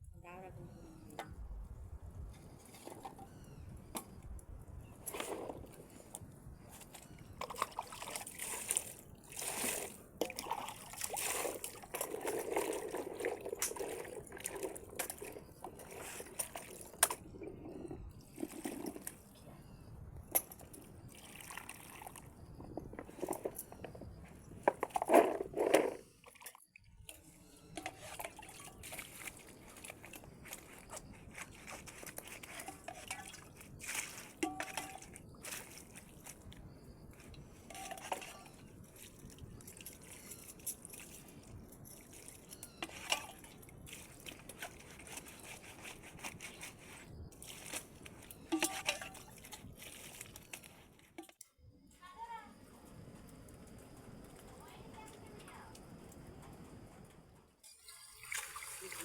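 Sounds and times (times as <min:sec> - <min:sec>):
water dripping and trickling: 0:04.2 - 0:19.3, 0:20.2 - 0:25.0, 0:26.2 - 0:51.4, 0:57.8 - 0:59.0.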